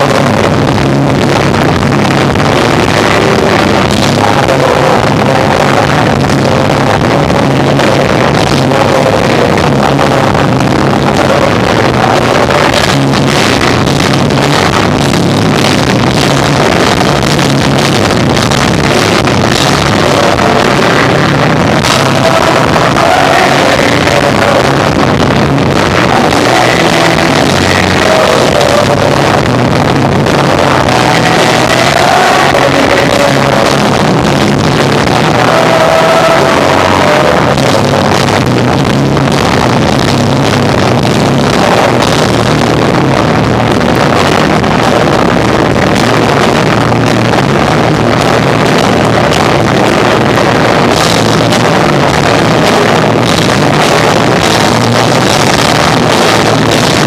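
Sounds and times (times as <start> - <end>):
bass guitar: 0.0 - 57.0
drums: 0.0 - 57.0
electric guitar: 0.0 - 57.0.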